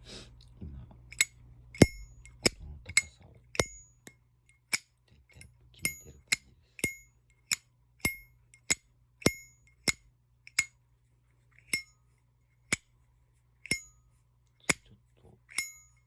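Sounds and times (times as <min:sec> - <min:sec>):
high metallic ringing ping: 0:01.1 - 0:02.6, 0:03.6 - 0:04.1, 0:08.0 - 0:08.4, 0:09.2 - 0:09.9, 0:13.7 - 0:14.0, 0:15.5 - 0:16.0.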